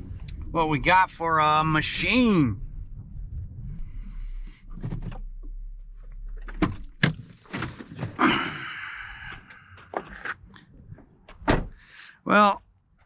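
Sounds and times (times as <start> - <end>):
faint low hum: 0.0 - 7.0
door clunks and clicks: 6.4 - 8.2, 11.0 - 11.8.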